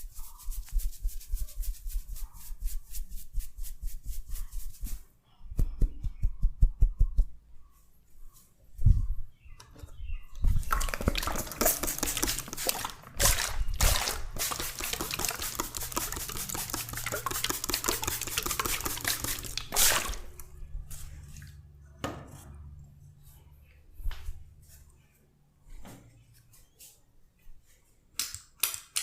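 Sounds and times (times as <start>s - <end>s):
oiled hands rubbing hair: 0.0s - 5.1s, 14.4s - 19.8s.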